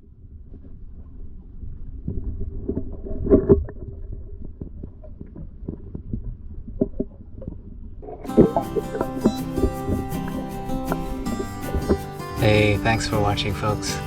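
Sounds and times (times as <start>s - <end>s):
music: 8.3s - 14.0s.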